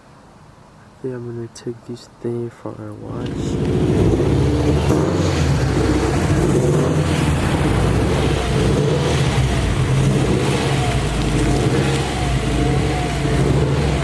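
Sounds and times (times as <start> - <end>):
car engine running steadily: 2.9 - 14.0
steady rushing noise: 3.0 - 14.0.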